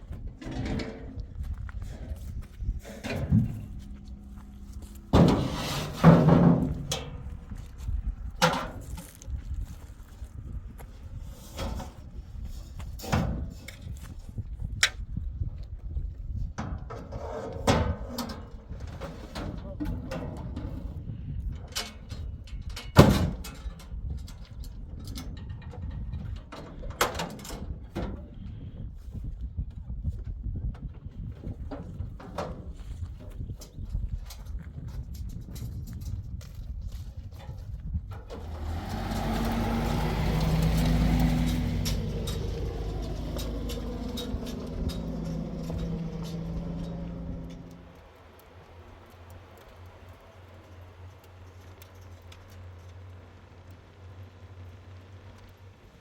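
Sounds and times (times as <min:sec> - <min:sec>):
vehicle engine driving past: 0:02.8 - 0:07.8, 0:38.4 - 0:48.4
knocks and thumps: 0:02.9 - 0:07.3.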